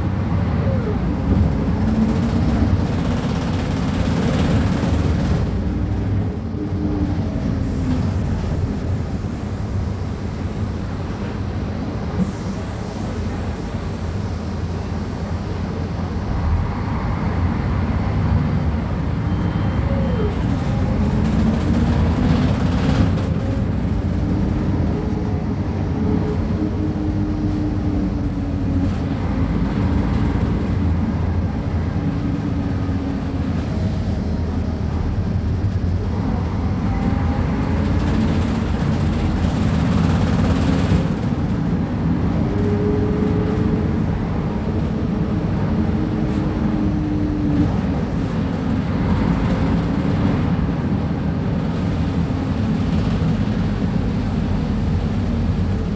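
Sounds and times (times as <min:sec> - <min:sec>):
bus diesel engine drone: 0:00.0 - 0:55.9.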